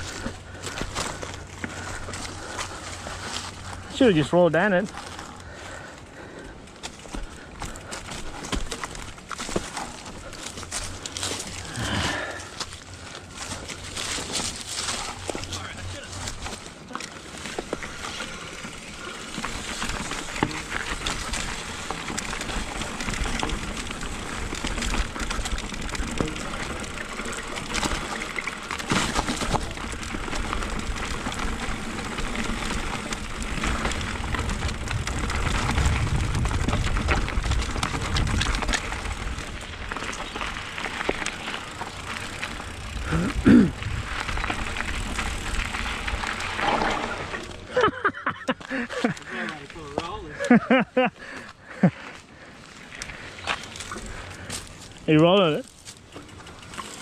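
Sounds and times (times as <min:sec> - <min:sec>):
bike rattling and clicking: 0:00.0 - 0:57.0
bike tyres on dirt and gravel: 0:00.0 - 0:57.0
wind rumble on microphone: 0:33.2 - 0:39.9, 0:43.0 - 0:46.6.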